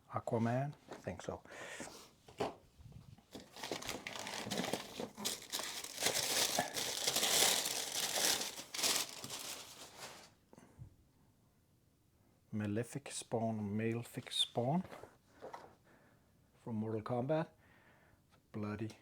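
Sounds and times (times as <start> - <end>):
packaging crinkling: 3.3 - 10.3.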